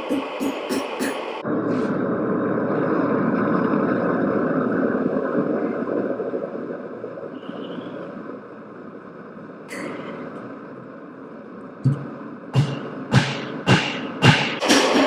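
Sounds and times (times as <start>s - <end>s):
gas forge burner roaring: 9.7s - 15.0s.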